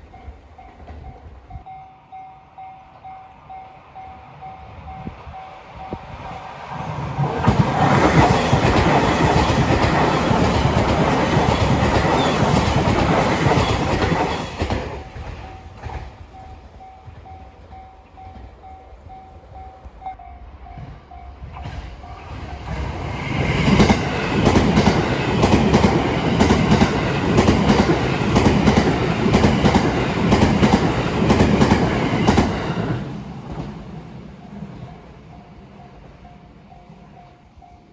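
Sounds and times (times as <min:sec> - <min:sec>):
crossing warning bell: 0:00.0 - 0:06.2, 0:08.3 - 0:23.0
train wheels passing: 0:00.0 - 0:37.9
wheels clacking on rail joints: 0:07.2 - 0:20.2, 0:20.8 - 0:34.0.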